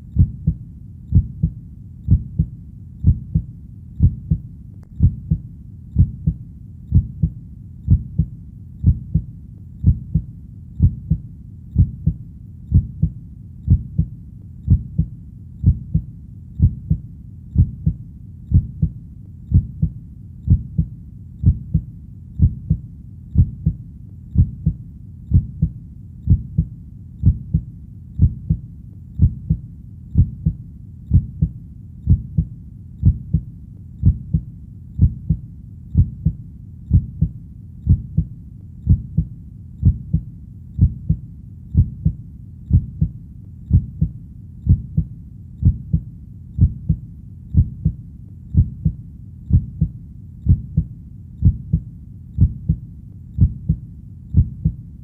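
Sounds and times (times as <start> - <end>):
low background rumble: 0.0 - 55.0
heartbeat double thump: 0.2 - 4.4, 5.0 - 5.4, 6.0 - 11.2, 14.7 - 17.0, 17.6 - 21.8, 24.4 - 28.6, 29.2 - 29.6, 30.2 - 34.4, 35.0 - 35.4, 36.0 - 37.3, 37.9 - 38.3, 38.9 - 40.2, 40.8 - 41.2, 41.8 - 43.1, 43.7 - 44.1, 44.7 - 46.0, 46.6 - 47.0, 47.6 - 48.0, 48.6 - 49.9, 50.5 - 51.8, 52.4 - 52.8, 53.4 - 53.8, 54.4 - 54.8.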